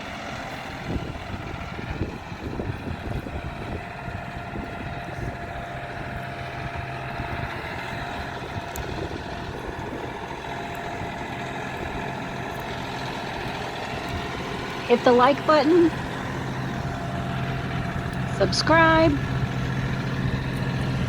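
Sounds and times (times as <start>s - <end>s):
vehicle engine running: 0.0s - 21.0s
wind noise: 0.8s - 5.5s.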